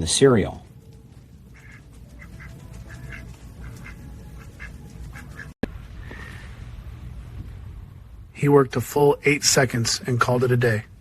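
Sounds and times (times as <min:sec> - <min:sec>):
low steady hum: 0:00.0 - 0:11.0
ducks quacking: 0:01.4 - 0:05.6.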